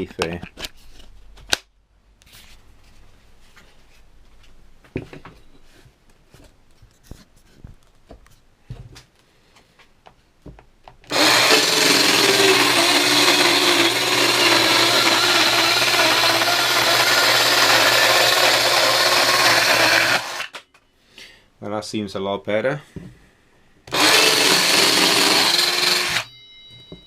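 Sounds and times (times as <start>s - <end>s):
mini circular saw cutting: 11.1s - 20.6s, 23.9s - 26.3s.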